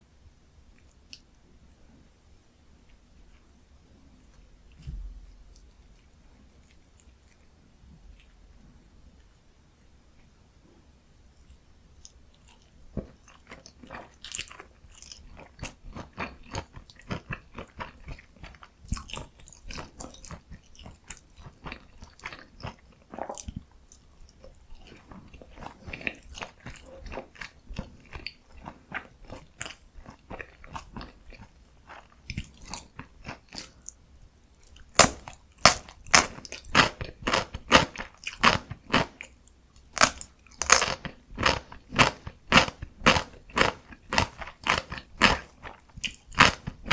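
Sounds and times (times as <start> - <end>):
soft moist chewing: 0.7 - 46.9
crisp crunching bites: 34.9 - 46.9.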